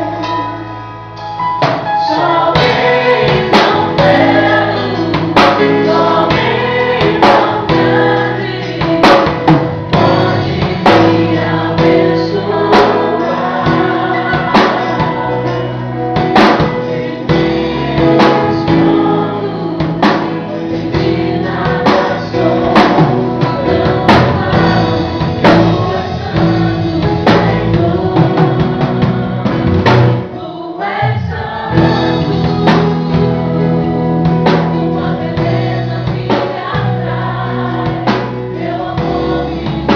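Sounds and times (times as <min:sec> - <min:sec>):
band with drums: 0:00.0 - 0:39.9
group singing gospel music: 0:00.0 - 0:39.9.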